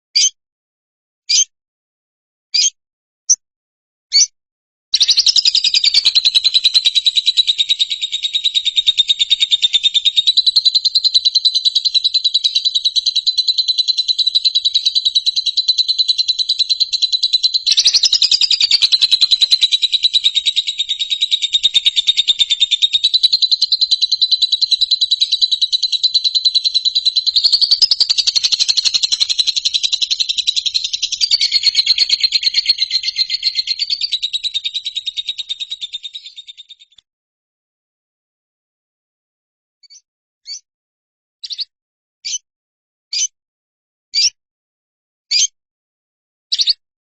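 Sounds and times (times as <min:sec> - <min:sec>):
songbird fast trill: 0:00.2 - 0:00.4, 0:01.3 - 0:01.5, 0:02.6 - 0:02.8, 0:05.0 - 0:37.0
songbird chirps: 0:05.0 - 0:37.0.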